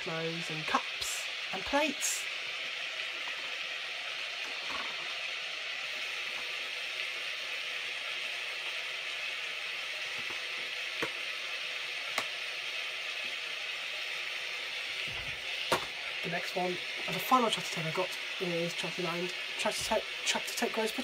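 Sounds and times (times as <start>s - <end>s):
steady rain falling: 14.8s - 21.0s.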